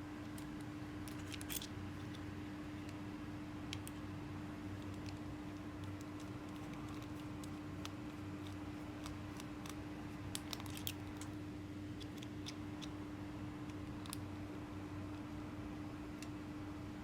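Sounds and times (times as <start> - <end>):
small metal parts clicking: 0.4 - 2.2.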